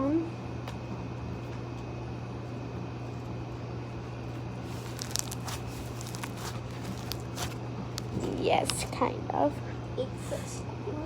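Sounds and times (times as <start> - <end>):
slimy toy filling squeezed crackling: 4.7 - 8.2.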